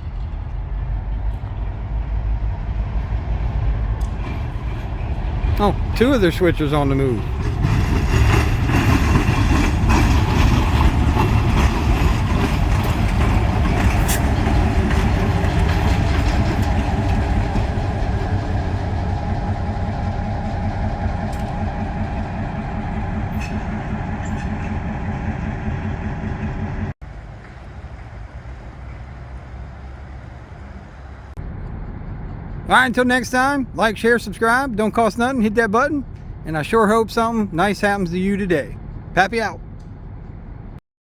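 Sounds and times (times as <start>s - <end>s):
diesel locomotive engine rumble: 0.0s - 40.8s.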